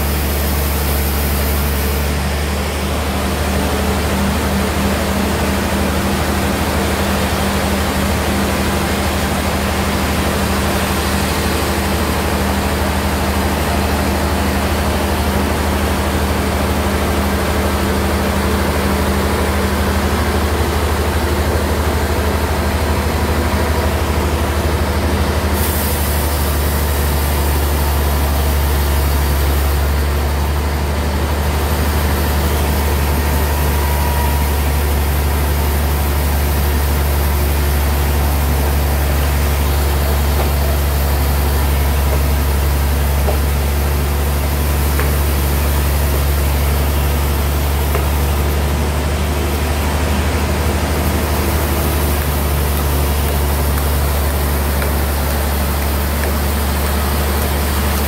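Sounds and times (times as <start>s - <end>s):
bandsaw machine hum: 0.0s - 58.0s.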